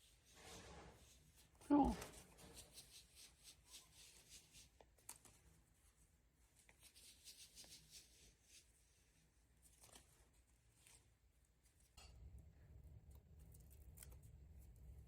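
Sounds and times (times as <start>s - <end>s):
paper rustling: 9.6s - 11.0s.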